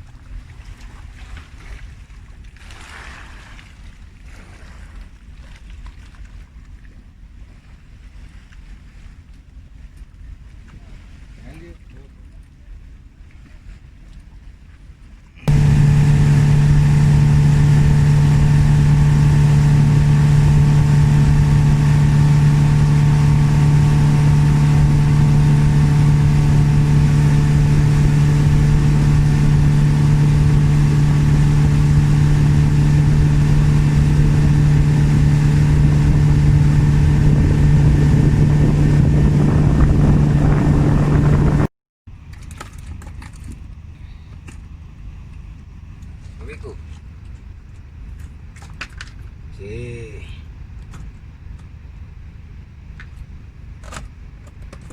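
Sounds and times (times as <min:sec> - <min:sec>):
boat engine running: 0:15.3 - 0:54.9.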